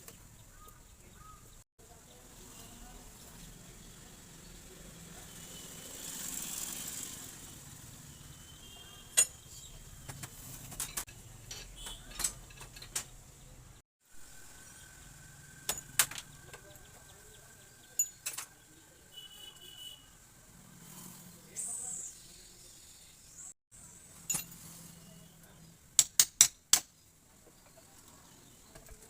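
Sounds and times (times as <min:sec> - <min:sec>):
metallic clicks and clinks of tools: 0:24.2 - 0:24.6.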